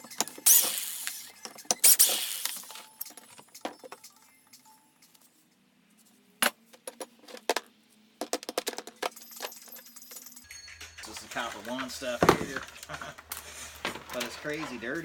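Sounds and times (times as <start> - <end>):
scrap metal clinking and rattling: 8.6 - 15.0.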